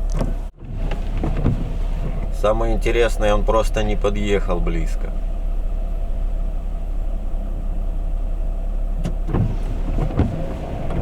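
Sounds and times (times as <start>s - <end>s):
short knocks or rustles: 0.0s - 2.4s
van engine idling: 0.0s - 11.0s.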